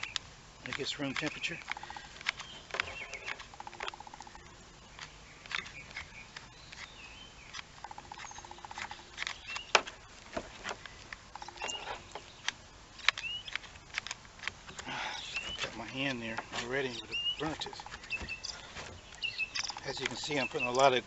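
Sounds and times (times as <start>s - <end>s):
sharp clicks and light knocks: 0.0s - 6.9s, 7.5s - 21.0s
high chirps: 14.8s - 21.0s.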